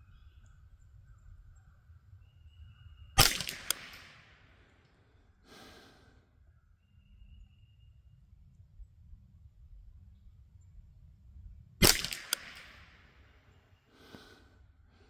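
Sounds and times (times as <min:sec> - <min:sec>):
metallic clicks of rifle action: 0:03.2 - 0:04.4, 0:11.8 - 0:13.2
rifle shot: 0:03.2 - 0:04.5, 0:11.8 - 0:13.5
short breathy hiss: 0:05.5 - 0:06.1.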